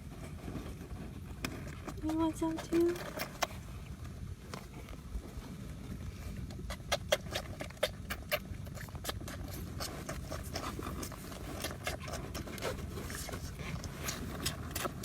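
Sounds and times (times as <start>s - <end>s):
low steady rumble: 0.0s - 15.0s
animal lapping water: 6.2s - 15.0s.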